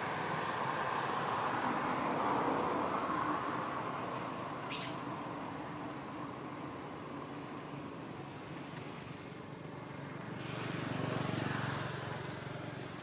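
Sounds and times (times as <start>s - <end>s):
vehicle driving past: 9.9s - 13.0s.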